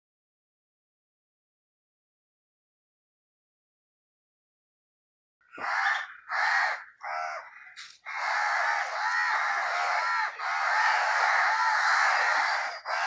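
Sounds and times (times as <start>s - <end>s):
crows cawing: 5.4s - 13.0s.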